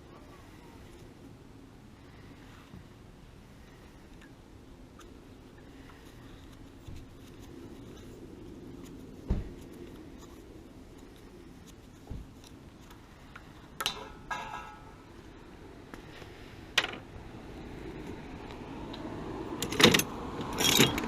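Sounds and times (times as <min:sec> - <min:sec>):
low steady hum: 0:00.0 - 0:21.0
metallic clattering hits: 0:13.8 - 0:15.0.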